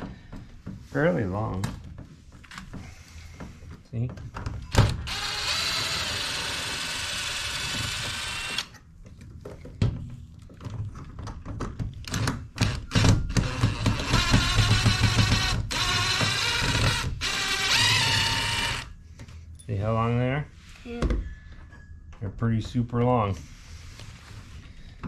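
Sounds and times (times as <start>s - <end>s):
cordless drill running: 5.1s - 8.7s, 12.6s - 18.9s.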